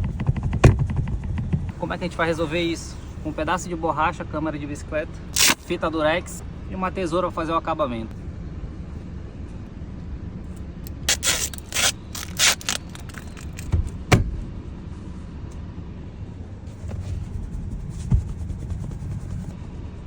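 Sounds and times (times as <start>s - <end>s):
sharp knock: 0.0s - 1.8s
low rumble: 0.0s - 3.5s, 16.6s - 19.6s
tape ripping off roll: 5.4s - 5.7s, 10.9s - 13.6s.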